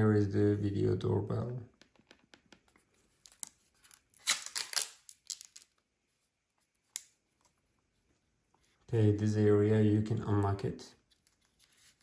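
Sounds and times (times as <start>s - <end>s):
packaging crinkling and tearing: 3.1s - 5.8s.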